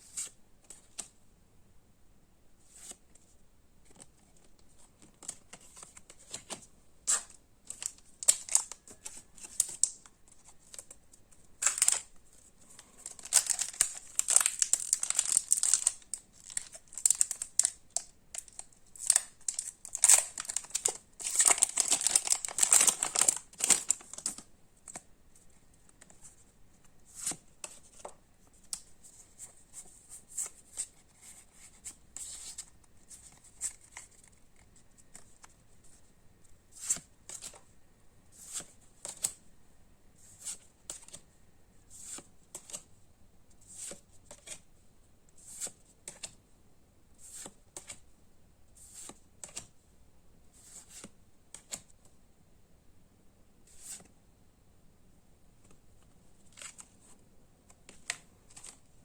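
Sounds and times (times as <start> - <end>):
card packaging tearing and crinkling: 7.1 - 10.0, 11.6 - 12.1, 12.8 - 24.4.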